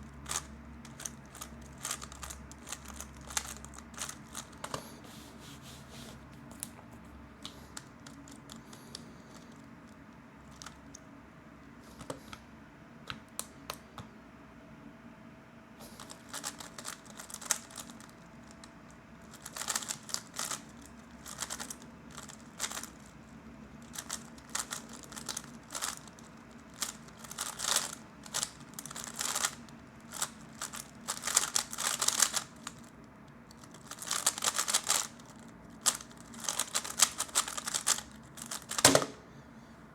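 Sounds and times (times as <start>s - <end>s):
puzzle cube turning clicks: 0.2s - 4.8s, 16.0s - 18.6s, 19.3s - 23.0s, 23.8s - 32.9s, 33.5s - 39.0s.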